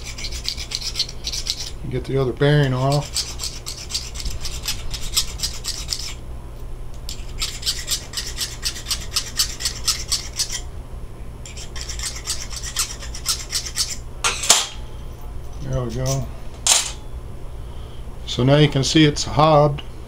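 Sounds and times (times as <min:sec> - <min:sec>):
metal file rasping on steel: 0:00.0 - 0:01.8, 0:02.6 - 0:06.2, 0:07.1 - 0:10.6, 0:11.5 - 0:14.0, 0:15.7 - 0:16.3.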